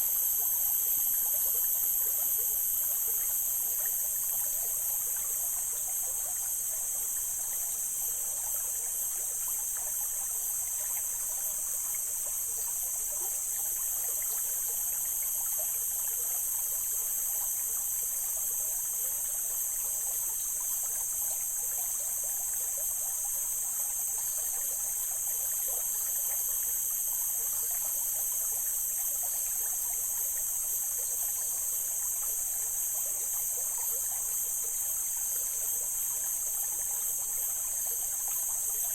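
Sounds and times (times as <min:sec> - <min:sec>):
high-pitched hiss: 0:00.0 - 0:22.3.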